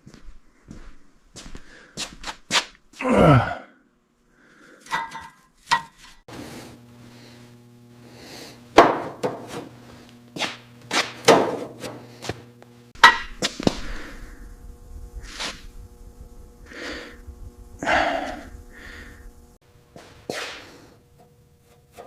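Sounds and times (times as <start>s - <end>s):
steady hum: 6.3s - 22.0s
tools striking metal: 13.0s - 13.4s.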